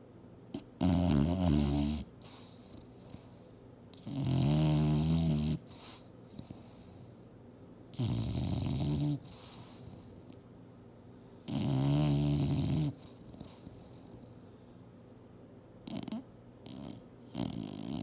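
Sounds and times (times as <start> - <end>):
dog snoring loudly: 0.5 - 7.2, 7.9 - 10.3, 11.5 - 14.4, 15.8 - 18.0.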